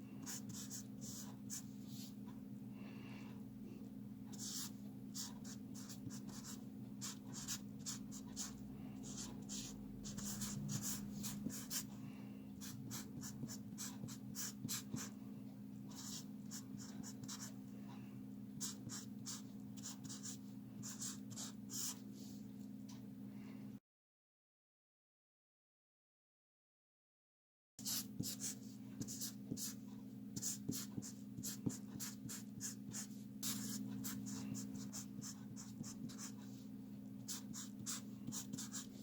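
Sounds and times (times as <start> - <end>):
steady low hum: 0.0 - 23.8.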